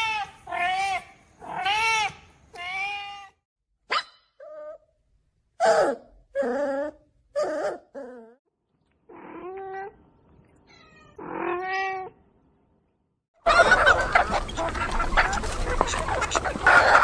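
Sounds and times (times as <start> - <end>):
cat meowing: 0.0 - 3.4, 10.6 - 12.2.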